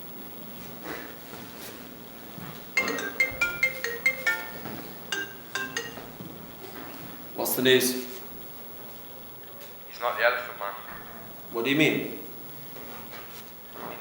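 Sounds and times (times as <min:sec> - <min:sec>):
faint room noise: 0:00.0 - 0:14.0
tinkling marimba-like melody: 0:02.8 - 0:06.2.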